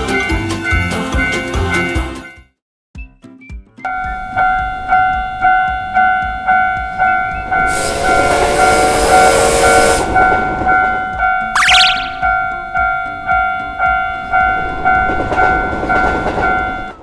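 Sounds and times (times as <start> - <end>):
railroad crossing alarm chime: 0.1 - 2.5, 3.9 - 17.0
train rushing past: 7.7 - 10.7.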